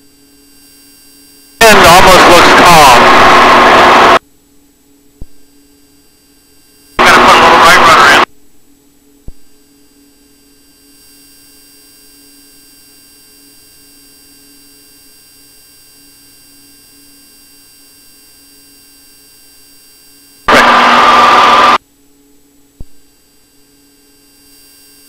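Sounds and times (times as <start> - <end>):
steady electrical hum: 0.0 - 25.0
loud burst of harsh noise: 1.6 - 4.2, 7.0 - 8.3, 20.5 - 21.8.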